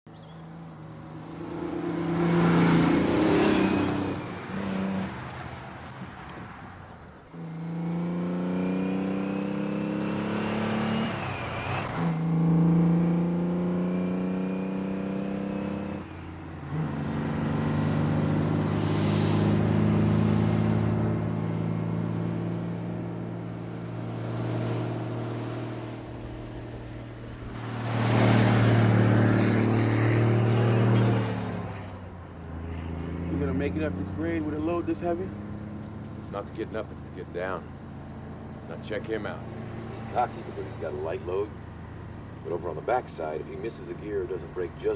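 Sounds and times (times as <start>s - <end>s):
truck engine shifting gears: 0.1s - 6.6s, 7.3s - 44.9s
traffic rushing past: 0.1s - 44.9s.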